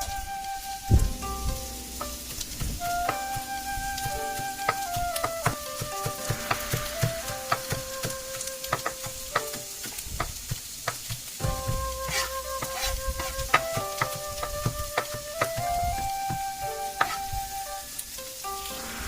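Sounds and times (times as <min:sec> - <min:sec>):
background music simple melody: 0:00.0 - 0:19.0
food sizzling in a hot pan: 0:00.0 - 0:19.0
utensil clicking against pan: 0:02.0 - 0:15.7.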